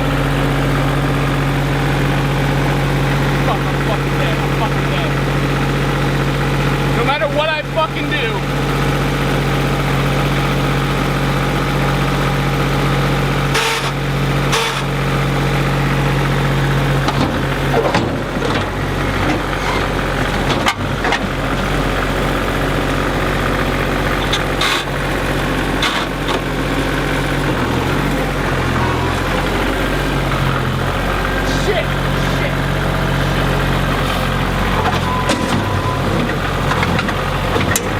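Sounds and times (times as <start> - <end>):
engine running: 0.0 - 37.9
sharp knocks or clanks: 34.8 - 37.9.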